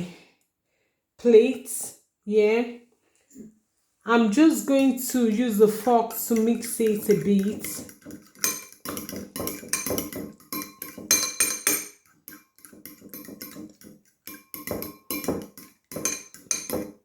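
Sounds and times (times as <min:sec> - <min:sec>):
fork beating eggs on a plate: 0:04.7 - 0:17.0.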